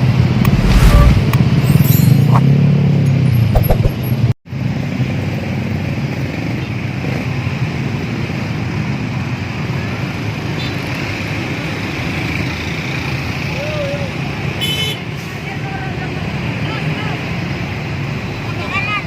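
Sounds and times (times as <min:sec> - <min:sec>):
motor vehicles passing in traffic: 0:00.0 - 0:19.0
low engine rumble: 0:00.3 - 0:01.9.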